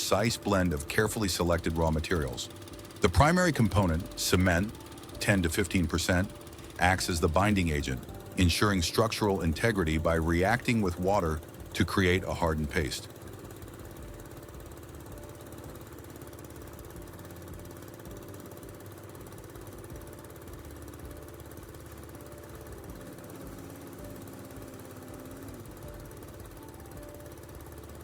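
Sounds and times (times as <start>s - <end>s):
factory machinery drone: 0.0s - 13.7s, 20.7s - 27.9s.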